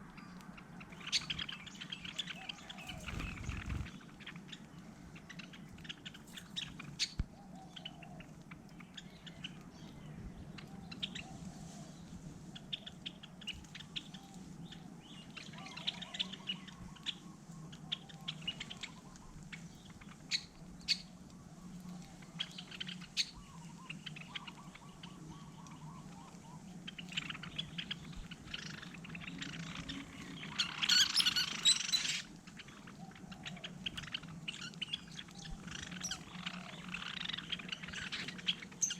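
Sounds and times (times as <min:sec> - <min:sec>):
small birds chirping: 0:00.0 - 0:38.9
steady low hum: 0:00.5 - 0:07.0.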